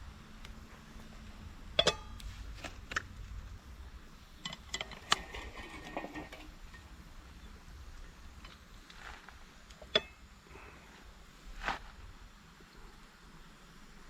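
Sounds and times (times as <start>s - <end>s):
metal cookware clinking: 1.8s - 2.2s.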